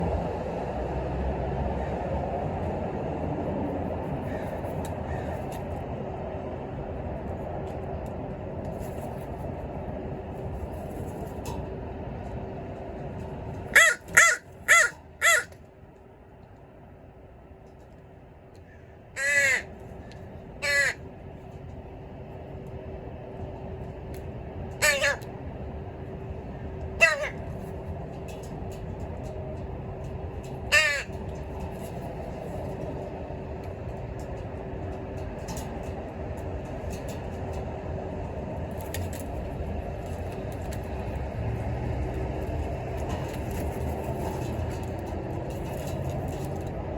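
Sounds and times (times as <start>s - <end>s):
low rumbling background noise: 0.0s - 46.9s
crow cawing: 4.3s - 5.4s, 13.7s - 15.6s, 18.7s - 19.7s, 20.6s - 21.0s, 24.8s - 25.2s, 27.0s - 27.4s, 30.7s - 31.2s.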